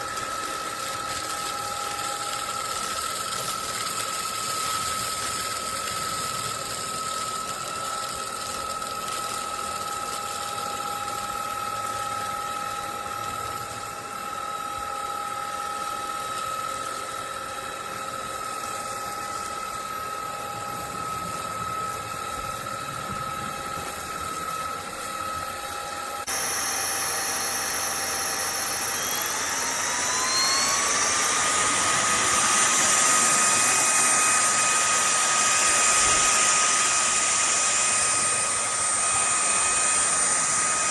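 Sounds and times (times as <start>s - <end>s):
stick vacuum motor whine: 0.0s - 40.9s.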